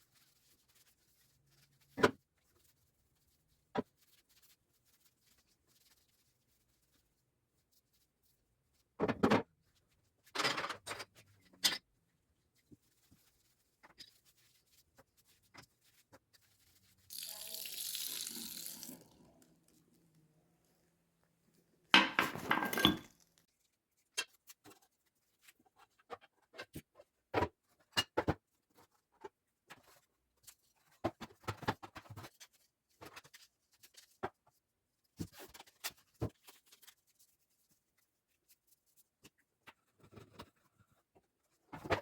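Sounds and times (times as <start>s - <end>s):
objects clicking and knocking: 22.0s - 23.4s.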